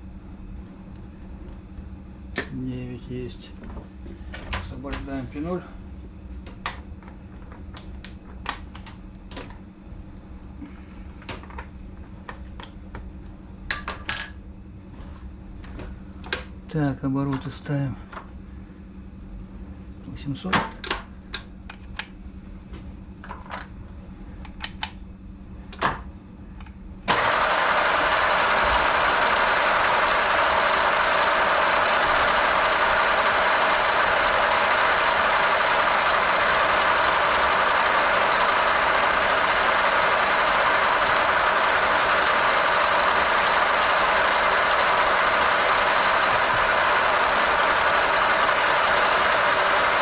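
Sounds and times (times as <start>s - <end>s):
milling machine humming and whining: 27.1s - 50.0s.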